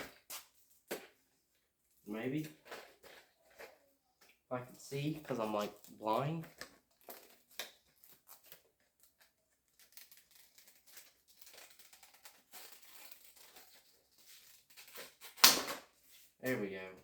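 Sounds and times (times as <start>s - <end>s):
packaging crinkling and rustling: 2.5s - 4.4s, 5.0s - 16.4s
sharp loud snap: 15.4s - 15.8s.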